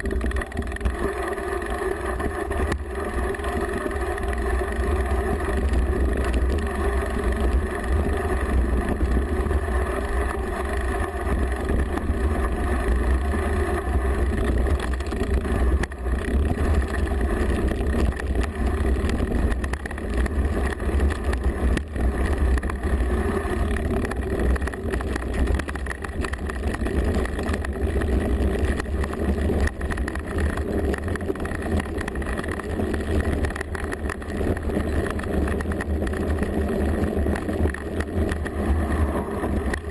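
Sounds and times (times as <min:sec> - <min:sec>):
small rattles and knocks: 0:00.0 - 0:01.1, 0:13.9 - 0:38.9
bike frame vibration: 0:00.0 - 0:39.9.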